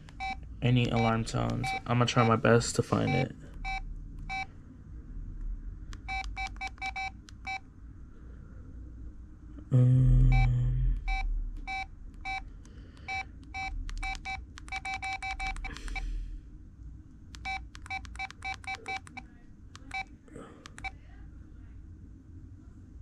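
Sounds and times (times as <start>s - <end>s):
phone keypad beeps: 0.0s - 2.4s, 3.0s - 4.5s, 6.0s - 7.6s, 10.3s - 16.0s, 17.4s - 19.2s, 19.8s - 21.0s.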